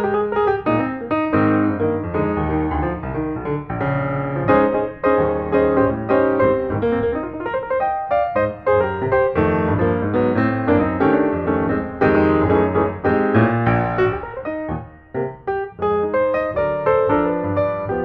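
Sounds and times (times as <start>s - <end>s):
piano music: 0.0s - 18.0s.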